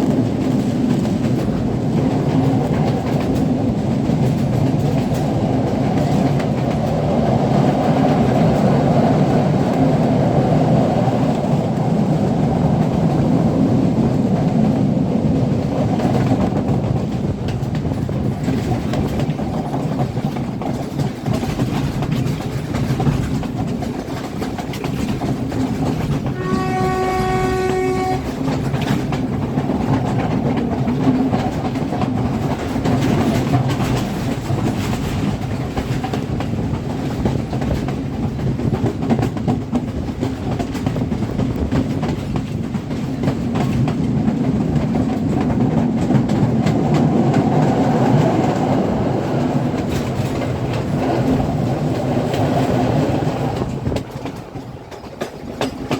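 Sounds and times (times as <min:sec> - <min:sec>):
train rumbling: 0:00.0 - 0:55.9
locomotive horn: 0:26.3 - 0:28.4.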